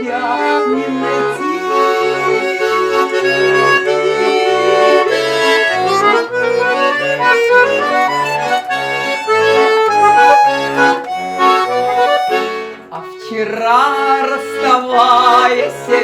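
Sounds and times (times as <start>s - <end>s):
button accordion folk melody: 0.0s - 16.0s.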